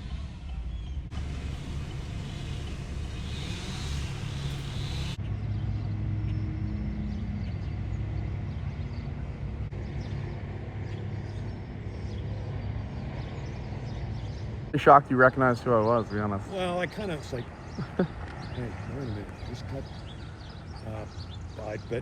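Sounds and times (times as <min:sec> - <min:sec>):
car engine and road rumble: 0:00.0 - 0:22.0
hiss: 0:01.1 - 0:05.2.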